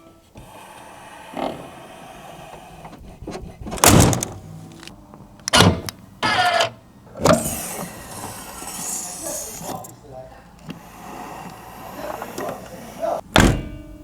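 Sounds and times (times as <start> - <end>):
power window whirs and clunks: 0.3 - 9.9, 10.6 - 13.8
electric motor whine: 6.2 - 13.2.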